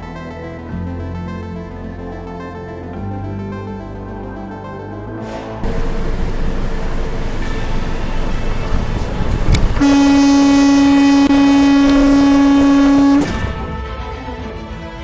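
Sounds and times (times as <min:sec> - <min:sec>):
vehicle rumble: 0:05.5 - 0:13.8
horn blasting steady note: 0:05.6 - 0:14.2.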